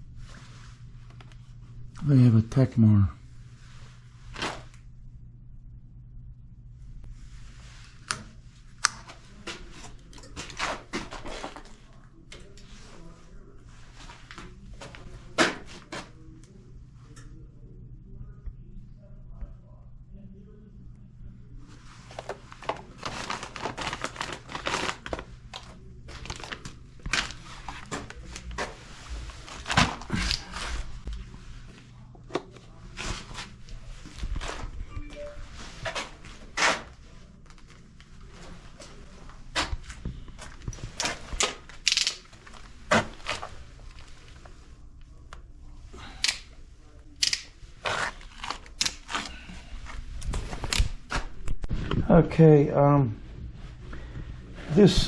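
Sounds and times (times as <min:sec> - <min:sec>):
low hum: 0:00.0 - 0:10.4, 0:16.1 - 0:47.7
rustling and crinkling handling noise: 0:07.0 - 0:16.6, 0:21.6 - 0:52.4, 0:53.0 - 0:55.0.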